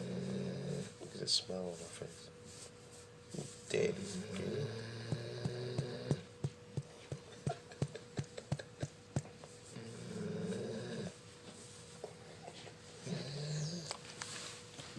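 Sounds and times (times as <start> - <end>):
dog snoring: 0.0 - 1.0, 3.3 - 6.3, 9.7 - 11.2, 12.2 - 14.0.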